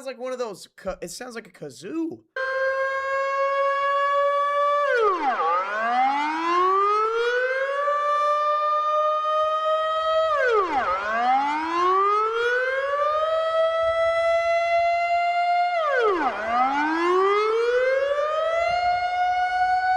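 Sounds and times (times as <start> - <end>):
buzzy warning siren: 2.4 - 19.9.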